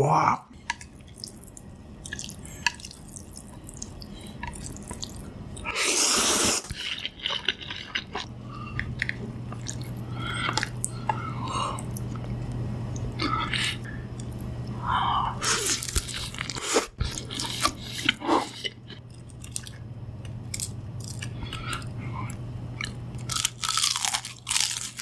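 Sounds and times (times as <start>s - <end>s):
chewing crunchy food: 0.6s - 5.7s, 6.6s - 14.7s, 15.4s - 25.0s
low hum: 6.7s - 25.0s.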